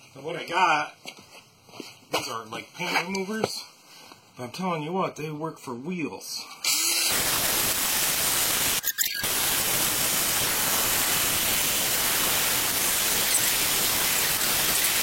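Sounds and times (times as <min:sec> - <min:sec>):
aerosol can spraying: 0:07.1 - 0:15.0.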